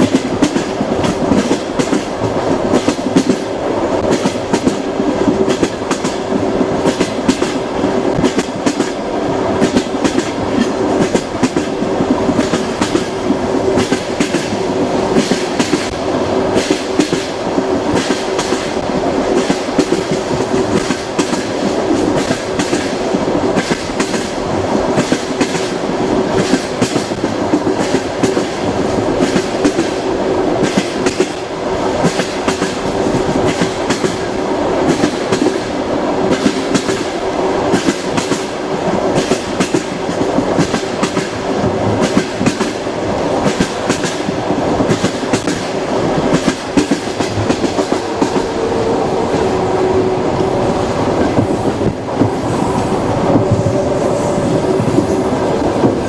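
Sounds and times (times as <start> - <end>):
train wheels clattering over rails: 0.0 - 56.0.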